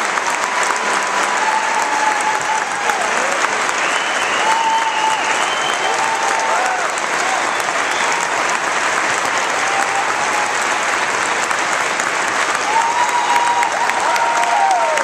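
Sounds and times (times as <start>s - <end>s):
concert audience applauding: 0.0s - 15.0s
long calls from audience: 0.4s - 11.2s, 12.5s - 15.0s.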